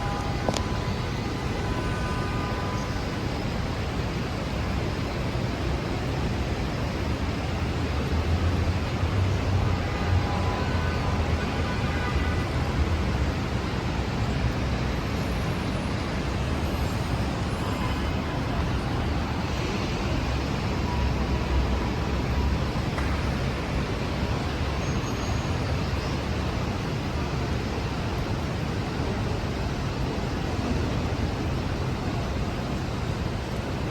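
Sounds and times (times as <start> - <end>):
city street traffic: 0.0 - 33.9.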